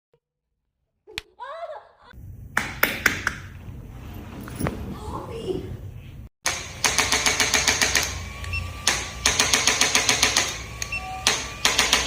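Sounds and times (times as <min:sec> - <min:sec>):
rapid mechanical tapping: 0:06.5 - 0:08.2, 0:08.8 - 0:12.0.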